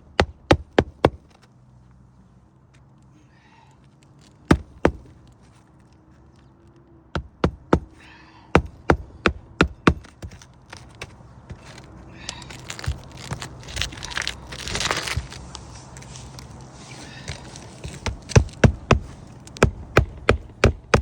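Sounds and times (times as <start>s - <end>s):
hammer striking roof shingles: 0.2s - 1.4s, 4.5s - 5.2s, 7.2s - 15.4s, 17.0s - 21.0s
scraping and rustling: 10.2s - 19.6s.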